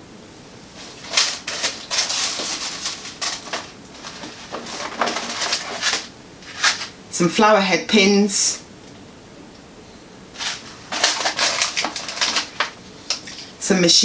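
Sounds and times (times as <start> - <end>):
packaging rustling and crinkling: 0.7 - 7.0, 10.4 - 13.5.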